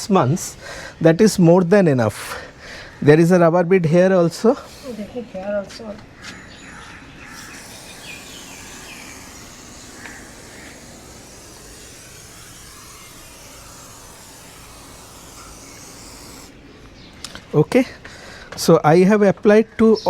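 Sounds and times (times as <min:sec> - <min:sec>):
aerosol spray hissing: 0:04.6 - 0:05.8, 0:07.2 - 0:16.6.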